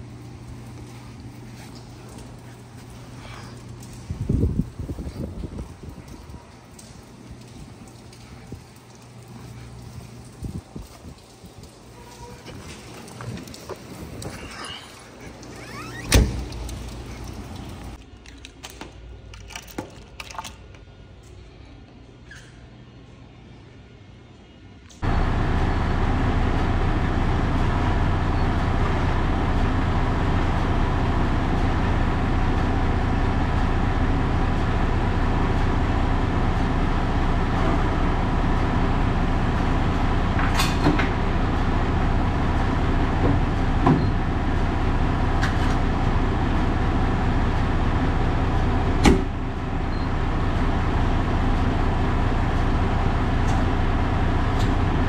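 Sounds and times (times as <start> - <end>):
truck diesel engine droning: 25.0 - 55.0.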